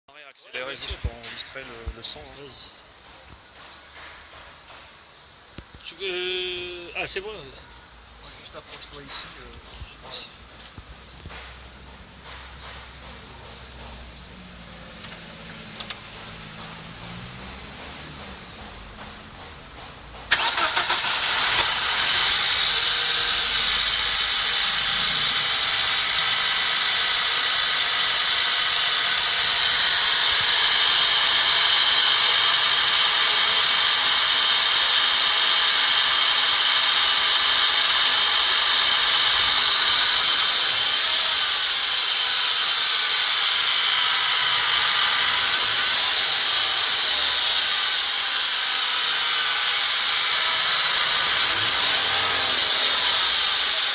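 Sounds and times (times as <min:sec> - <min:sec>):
car engine running: 0:11.3 - 0:53.9
high-pitched hissing whine: 0:12.8 - 0:53.9.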